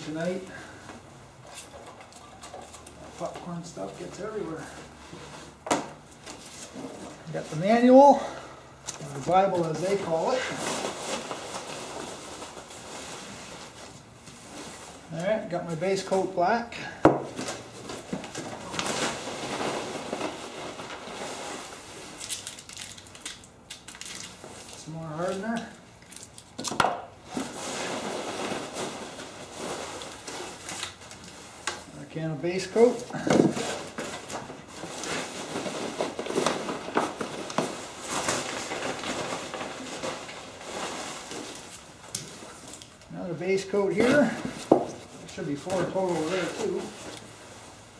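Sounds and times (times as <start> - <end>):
packing peanuts rustling: 6.2 - 16.6, 17.3 - 47.9.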